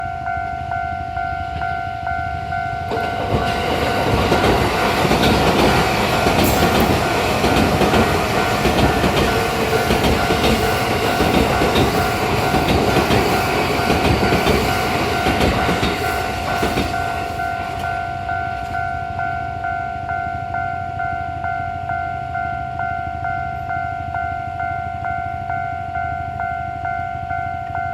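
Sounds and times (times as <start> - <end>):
railway crossing alarm ringing: 0.0 - 27.9
train wheels clattering over rails: 2.9 - 18.0.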